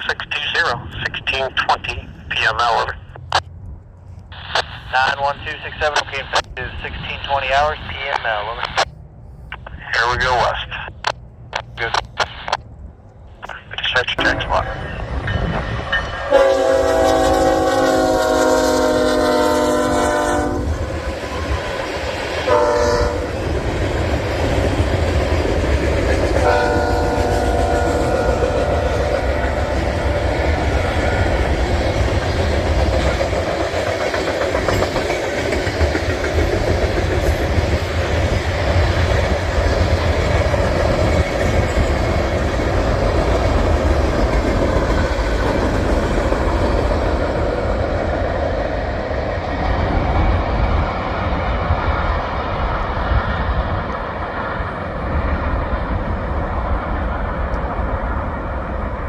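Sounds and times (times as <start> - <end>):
train wheels rumbling on rail: 0.0 - 59.0
locomotive horn: 16.3 - 20.7, 22.5 - 23.3, 26.4 - 30.3.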